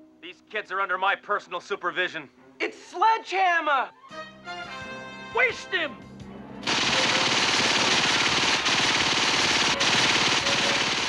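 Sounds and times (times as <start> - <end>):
automatic gunfire: 6.6 - 11.0.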